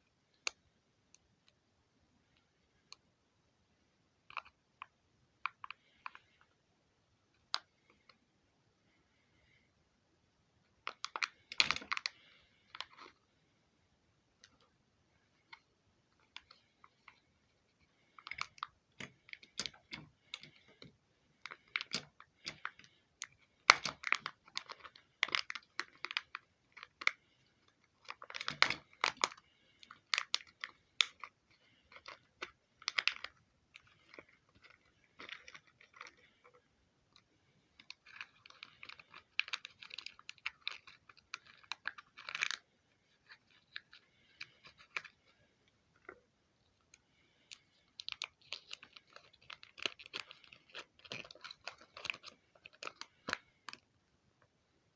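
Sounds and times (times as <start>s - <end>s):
crinkling packaging clicks: 10.8s - 13.2s, 15.4s - 45.4s, 46.8s - 54.5s.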